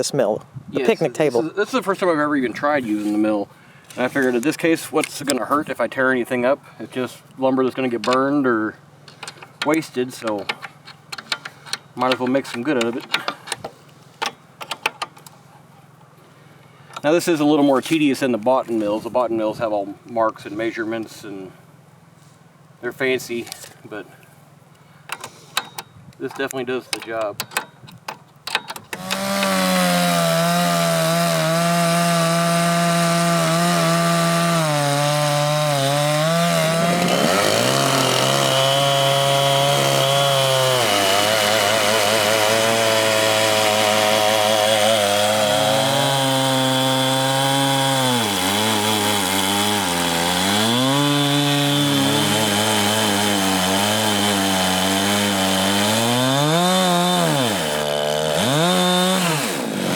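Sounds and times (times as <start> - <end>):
chainsaw cutting log: 28.8 - 59.9.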